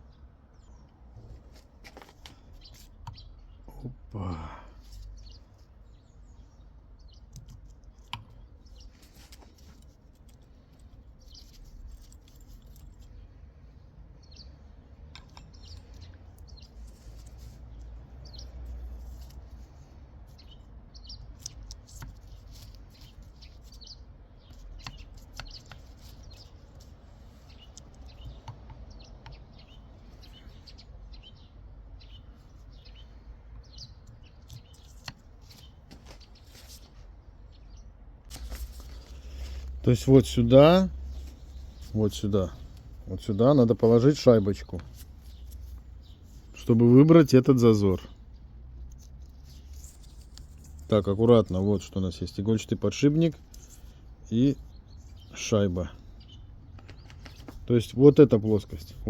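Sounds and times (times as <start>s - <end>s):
birds chirping: 0.0s - 59.0s.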